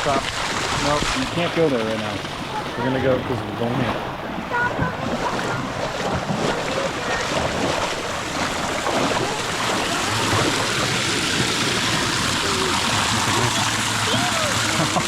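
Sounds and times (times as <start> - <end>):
waterfall rushing: 4.5 - 15.0.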